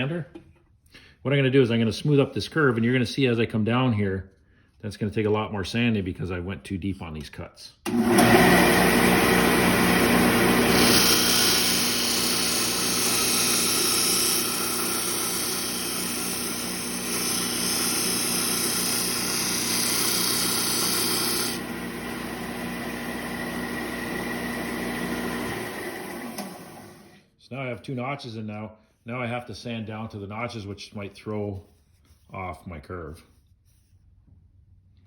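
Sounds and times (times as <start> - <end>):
power sander humming: 7.9 - 27.2
sander grinding wood: 7.9 - 27.2.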